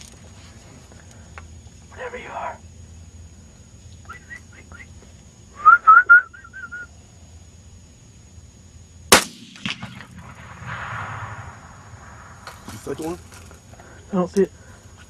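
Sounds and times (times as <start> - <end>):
high rising whistles: 4.0 - 4.9, 5.6 - 6.9, 10.3 - 13.2
rifle shot: 9.1 - 12.8
faint crack: 9.2 - 13.9.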